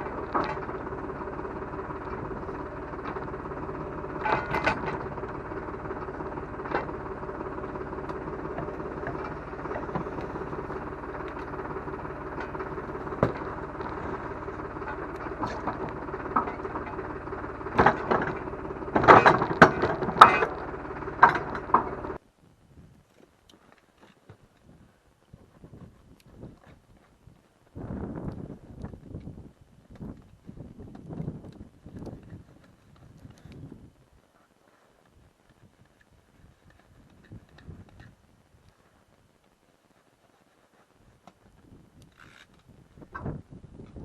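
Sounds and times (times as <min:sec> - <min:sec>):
engine running: 0:00.0 - 0:22.2
metal knocks and clanks: 0:00.0 - 0:22.2.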